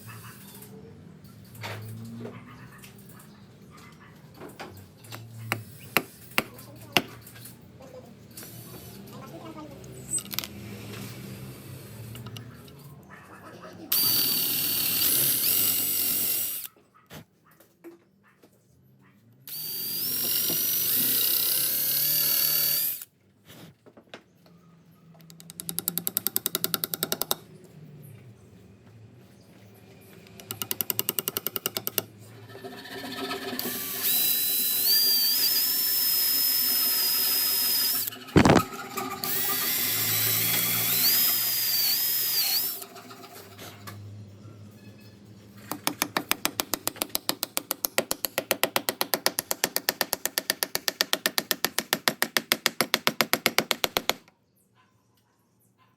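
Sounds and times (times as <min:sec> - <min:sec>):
power drill whining: 0:13.9 - 0:16.7, 0:19.5 - 0:23.1, 0:32.6 - 0:43.4.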